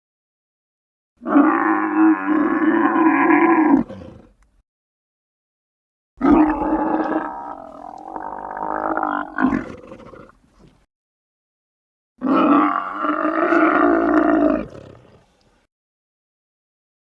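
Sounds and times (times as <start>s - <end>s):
dinosaur growling roar: 1.2s - 3.9s, 6.2s - 10.3s, 12.2s - 15.3s.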